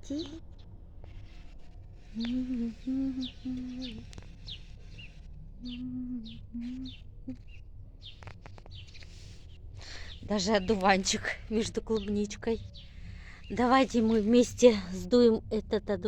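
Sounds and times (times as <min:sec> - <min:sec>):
songbird chirping: 0:00.0 - 0:16.0
person humming low notes: 0:02.0 - 0:04.4, 0:05.4 - 0:07.5.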